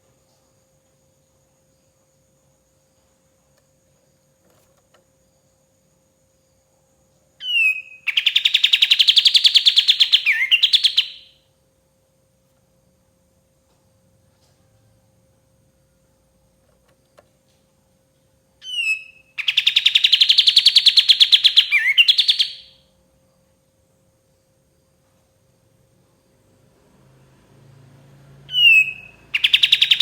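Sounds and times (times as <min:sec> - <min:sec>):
bird singing a rapid trill: 0:07.4 - 0:11.5, 0:18.6 - 0:22.9, 0:28.4 - 0:30.0.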